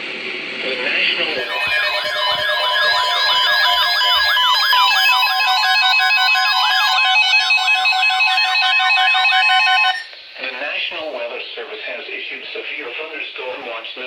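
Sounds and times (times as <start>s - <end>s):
electronic beeping tones: 1.4s - 10.1s
sweeping alarm tone: 1.4s - 10.1s.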